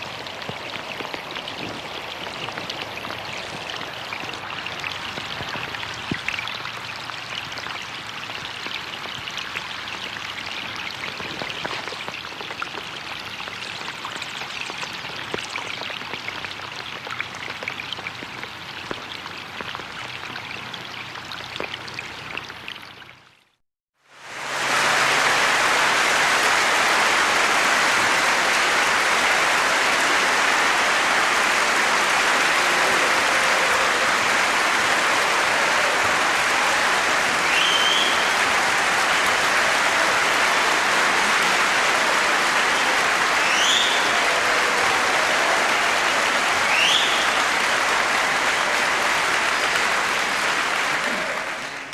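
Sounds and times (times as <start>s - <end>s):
heavy rain: 0.0s - 13.0s, 24.1s - 51.9s.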